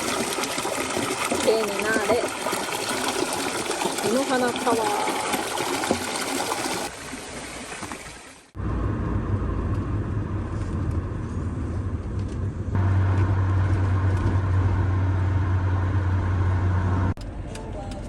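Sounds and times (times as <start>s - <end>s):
road rumble: 8.5s - 18.0s
car engine running: 8.6s - 17.4s.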